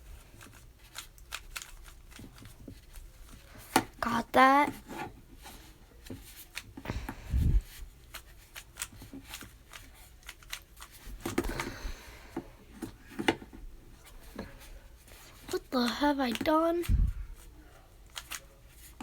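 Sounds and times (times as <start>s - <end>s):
puzzle cube clicking turns: 0.4s - 4.0s, 8.0s - 11.9s, 18.1s - 18.8s.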